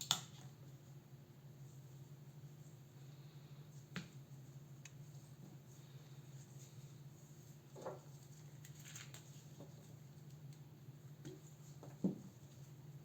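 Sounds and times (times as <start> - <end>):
steady low hum: 0.4 - 8.7.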